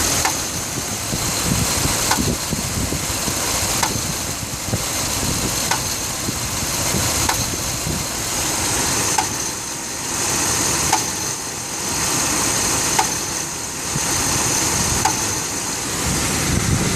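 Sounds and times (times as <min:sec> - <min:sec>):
engine idling with knocking: 0:00.0 - 0:16.9
sharp engine tick: 0:00.2 - 0:00.5, 0:02.0 - 0:02.4, 0:03.8 - 0:04.1, 0:05.7 - 0:06.0, 0:07.2 - 0:07.6, 0:09.2 - 0:09.4, 0:10.9 - 0:11.2, 0:13.0 - 0:13.2, 0:15.0 - 0:15.4.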